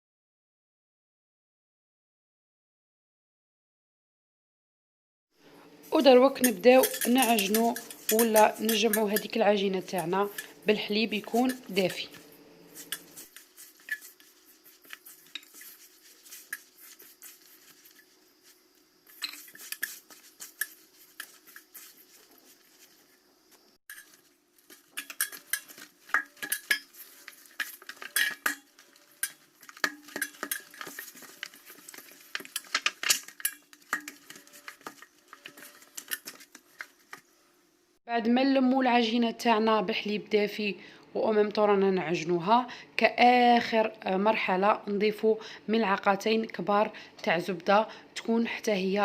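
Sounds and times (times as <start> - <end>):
utensil scraping mixing bowl: 5.9 - 23.2, 23.9 - 37.3.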